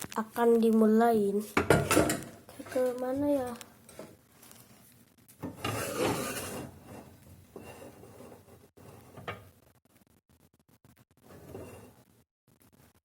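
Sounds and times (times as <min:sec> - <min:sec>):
objects rubbing and scraping: 0:01.8 - 0:09.6, 0:11.2 - 0:12.1.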